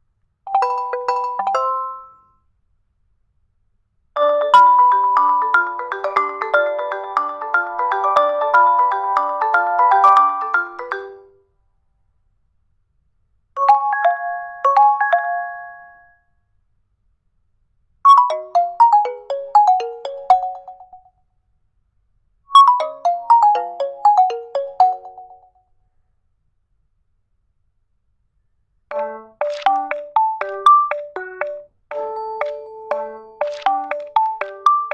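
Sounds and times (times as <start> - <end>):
phone ringtone melodies: 0.5 - 2.2, 4.2 - 11.3, 18.1 - 21.1, 22.6 - 25.6, 28.9 - 34.9.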